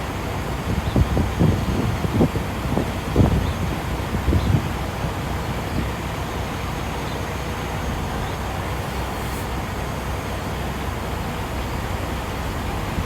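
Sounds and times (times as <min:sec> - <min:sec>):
noisy hiss: 0:07.4 - 0:13.0.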